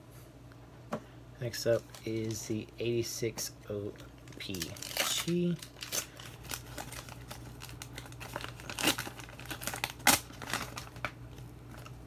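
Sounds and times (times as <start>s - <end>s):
paper wrapper tearing and crinkling: 4.2s - 12.0s.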